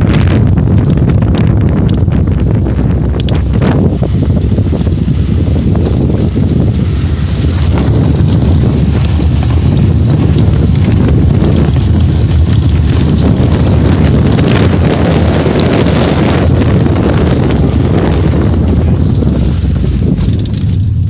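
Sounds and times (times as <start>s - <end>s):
car engine running with knock: 0.0s - 21.0s
wind noise on microphone: 0.0s - 21.0s.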